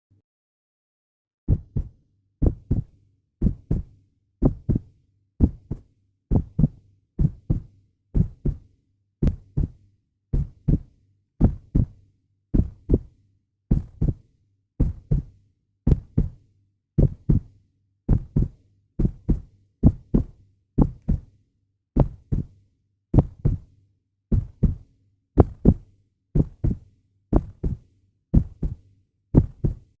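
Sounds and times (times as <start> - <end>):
heartbeat thumps: 1.5 - 9.8, 10.4 - 12.0, 12.6 - 13.1, 13.7 - 14.2, 14.8 - 16.4, 17.0 - 17.5, 18.1 - 21.3, 22.0 - 22.5, 23.2 - 23.7, 24.3 - 24.8, 25.4 - 27.8, 28.4 - 28.8, 29.4 - 30.0.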